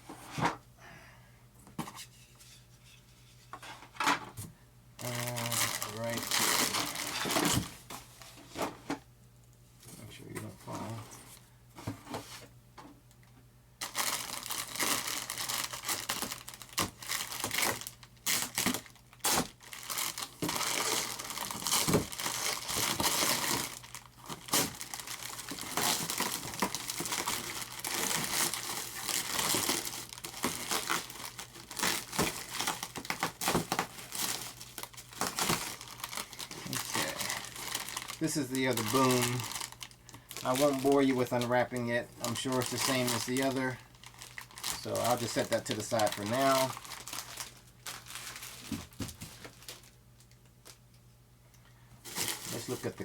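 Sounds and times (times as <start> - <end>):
plastic wrap crinkling and tearing: 5.0 - 7.7, 13.8 - 50.8, 52.0 - 53.0.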